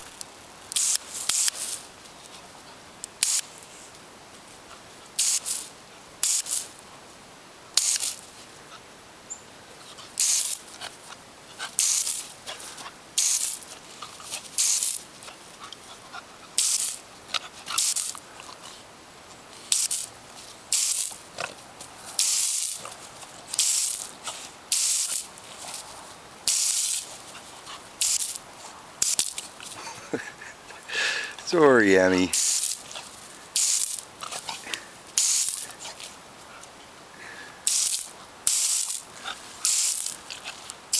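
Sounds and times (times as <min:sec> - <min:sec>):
puppy sniffing and snuffling: 0:32.3 - 0:36.8.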